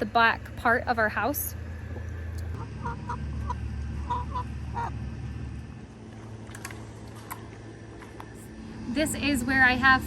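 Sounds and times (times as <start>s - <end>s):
low rumble: 0.0s - 10.0s
chickens clucking: 2.5s - 5.0s.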